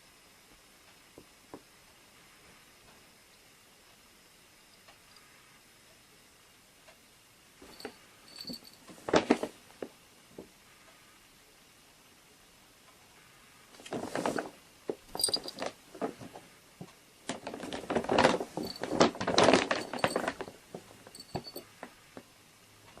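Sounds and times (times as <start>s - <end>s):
small metallic clinks: 7.6s - 8.9s, 15.1s - 15.8s, 19.7s - 21.8s
clattering knocks and rustles: 13.8s - 22.0s.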